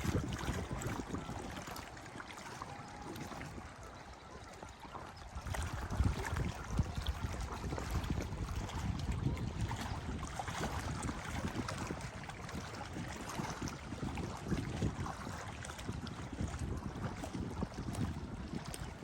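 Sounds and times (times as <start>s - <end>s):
lake water lapping: 0.0s - 19.0s
wind buffeting microphone: 0.0s - 19.0s.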